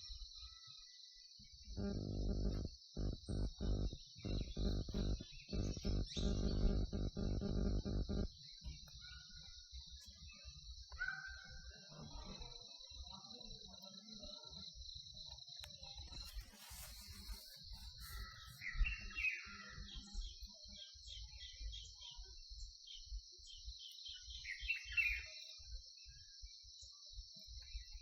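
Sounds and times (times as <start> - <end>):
high drone of insects: 1.8 - 8.5.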